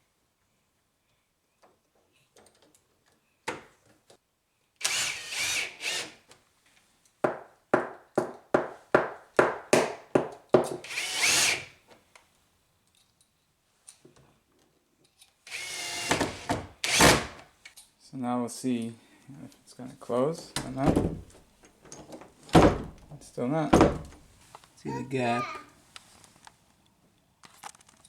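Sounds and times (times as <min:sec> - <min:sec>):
power drill driving a screw: 0:04.8 - 0:06.2, 0:10.8 - 0:11.7, 0:15.5 - 0:17.4.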